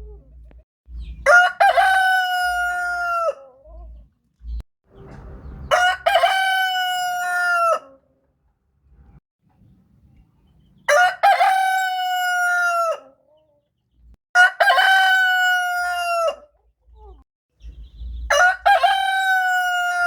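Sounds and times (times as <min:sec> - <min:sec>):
rooster crowing: 0:01.2 - 0:03.5, 0:05.6 - 0:08.0, 0:10.9 - 0:13.2, 0:14.4 - 0:16.5, 0:18.3 - 0:20.0.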